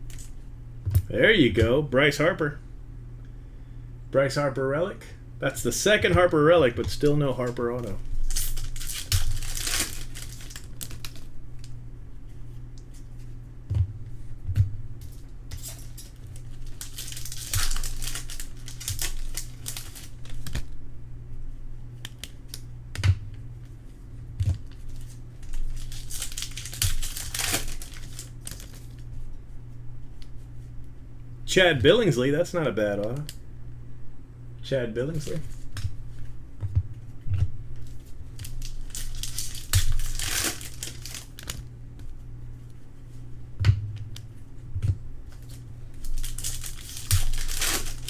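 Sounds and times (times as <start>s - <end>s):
low steady hum: 0.0s - 48.0s
wrappers tearing and crinkling: 8.0s - 11.8s, 15.1s - 20.8s, 24.6s - 29.0s, 37.8s - 41.7s, 45.4s - 48.0s.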